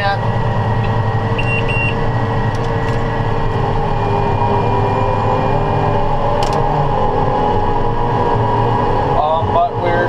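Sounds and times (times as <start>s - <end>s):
tractor engine running: 0.0s - 10.0s.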